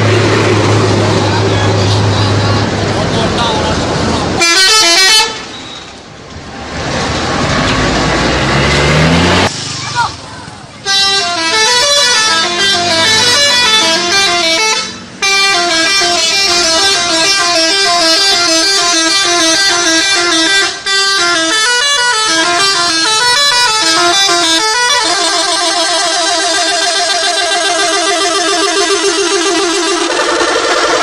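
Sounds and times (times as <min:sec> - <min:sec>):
bus horns playing a melodic tune: 0:04.3 - 0:05.6, 0:10.8 - 0:31.0.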